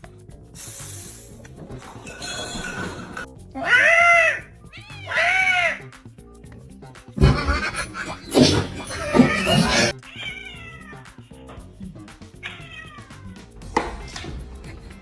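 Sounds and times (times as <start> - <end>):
cat meowing and yowling: 3.6 - 5.9, 8.9 - 11.1, 12.4 - 14.2.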